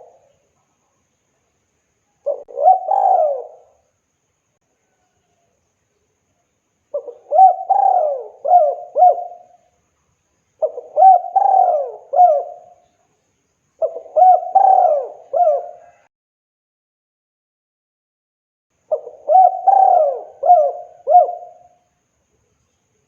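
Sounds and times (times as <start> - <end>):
dove cooing: 2.2 - 3.8, 6.9 - 9.6, 10.6 - 12.8, 13.8 - 16.1, 18.9 - 21.8.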